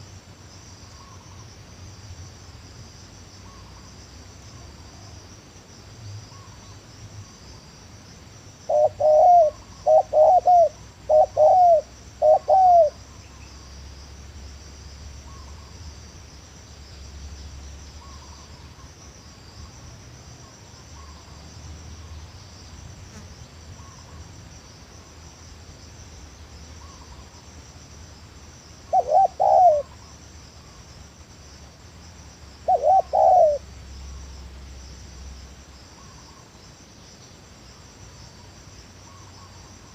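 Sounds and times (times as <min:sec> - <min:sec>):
crickets trilling: 0:00.0 - 0:39.9
dove cooing: 0:08.7 - 0:13.1, 0:28.9 - 0:30.1, 0:32.6 - 0:33.7.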